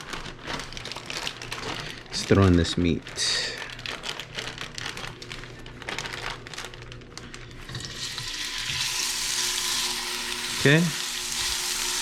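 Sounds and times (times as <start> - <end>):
oil crackling: 0.0 - 12.0
meat sizzling in hot oil: 7.8 - 12.0.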